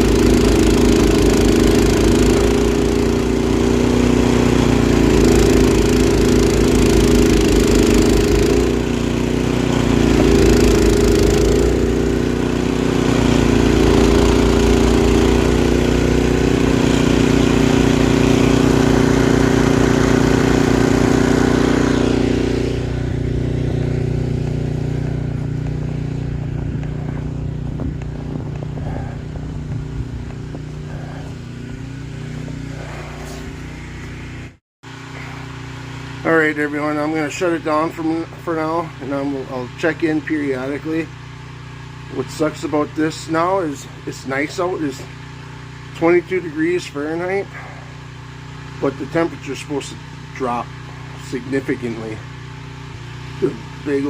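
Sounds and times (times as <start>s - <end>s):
snowblower engine running: 0.0s - 54.0s.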